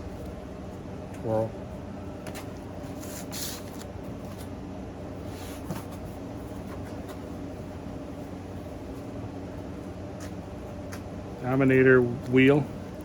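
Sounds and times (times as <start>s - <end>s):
steady low hum: 0.0s - 13.0s
cardboard and plastic rustling: 5.2s - 7.3s.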